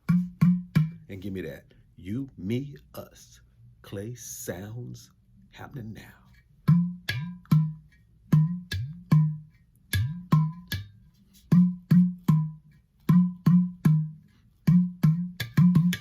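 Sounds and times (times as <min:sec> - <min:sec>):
clay pot drum played by hand: 0:00.0 - 0:01.1, 0:06.6 - 0:16.0.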